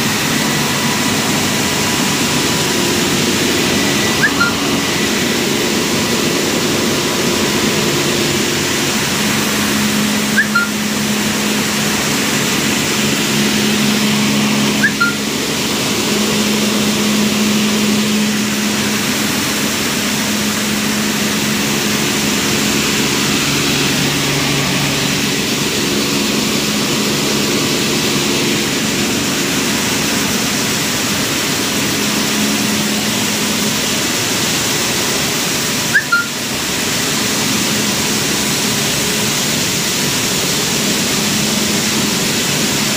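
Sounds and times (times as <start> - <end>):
milling machinery running: 0.0 - 42.9
brief high chirps: 4.2 - 4.7, 10.3 - 10.8, 14.8 - 15.3, 35.9 - 36.4.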